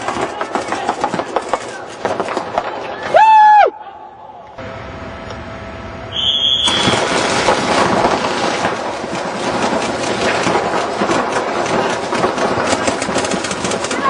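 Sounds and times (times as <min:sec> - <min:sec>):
paintball markers firing: 0:00.0 - 0:02.8, 0:06.7 - 0:14.0.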